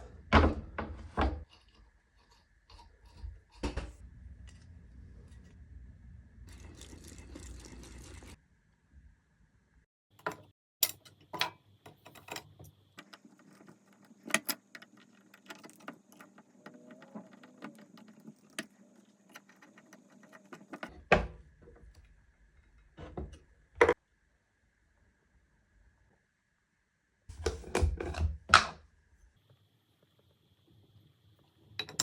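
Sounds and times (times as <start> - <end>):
metal engine parts clinking: 10.2 - 20.9.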